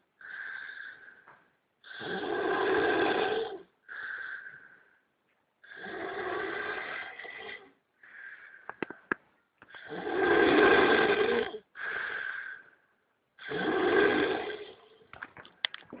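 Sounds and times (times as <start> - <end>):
turtle snoring: 0.2 - 1.2, 1.8 - 4.8, 5.6 - 8.5, 9.7 - 12.7, 13.4 - 15.1.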